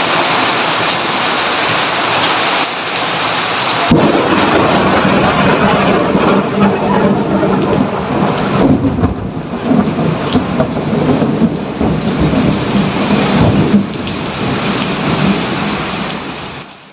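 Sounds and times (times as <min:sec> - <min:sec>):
steady rain falling: 0:00.0 - 0:16.9
thunder rumbling: 0:03.8 - 0:16.6.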